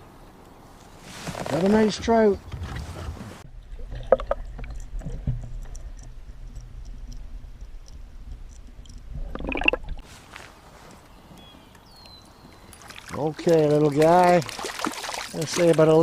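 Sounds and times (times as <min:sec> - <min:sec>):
water splashing: 0:08.8 - 0:10.0, 0:12.6 - 0:16.0
water sloshing around kayak: 0:12.4 - 0:16.0.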